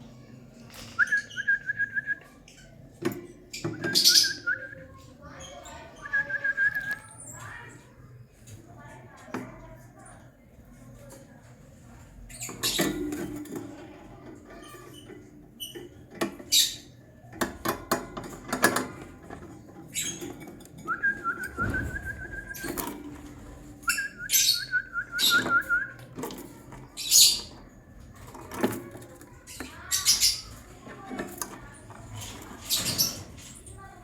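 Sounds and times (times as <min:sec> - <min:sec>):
lovebirds chirping and screeching: 0:03.5 - 0:04.6, 0:12.2 - 0:13.5, 0:14.1 - 0:17.1, 0:19.8 - 0:33.8
wavering bird whistles: 0:23.9 - 0:25.9.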